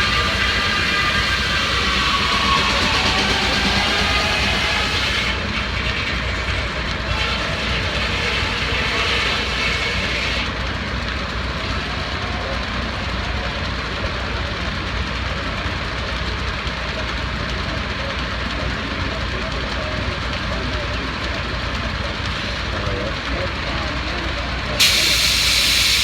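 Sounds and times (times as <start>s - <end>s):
hiss: 0.0s - 5.8s, 24.8s - 26.0s
heavy machinery rumbling: 0.0s - 26.0s.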